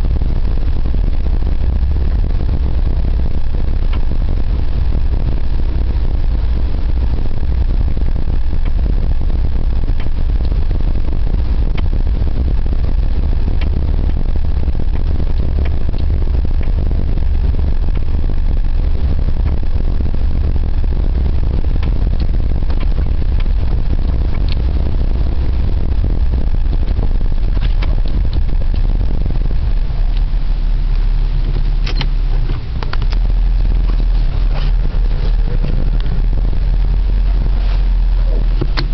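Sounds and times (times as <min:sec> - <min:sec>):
car low rumble: 0:00.0 - 0:38.9
suspension knocks: 0:38.4 - 0:38.9.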